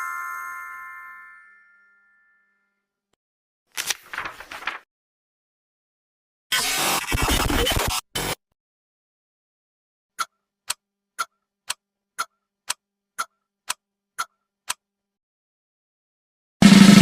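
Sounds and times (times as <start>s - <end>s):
clock ticking: 10.2s - 14.8s.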